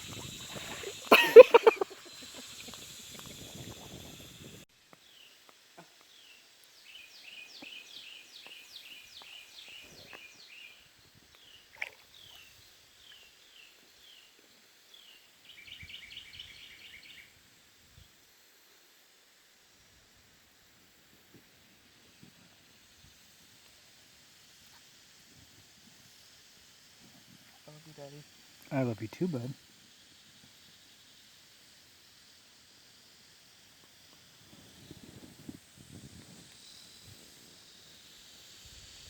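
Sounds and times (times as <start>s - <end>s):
steady hiss: 0.0s - 39.0s
songbird singing: 5.0s - 17.3s.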